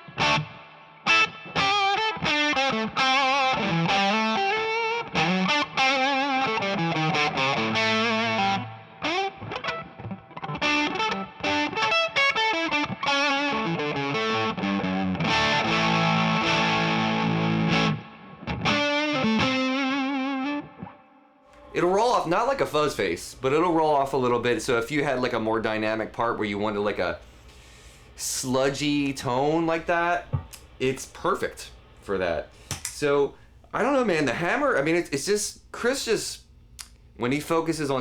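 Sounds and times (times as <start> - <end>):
fuzz electric guitar: 0.0 - 21.7.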